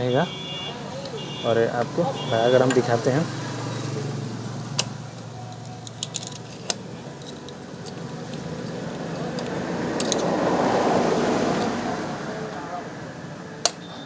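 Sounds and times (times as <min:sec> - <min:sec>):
metallic clicks of tools: 0:04.7 - 0:10.4.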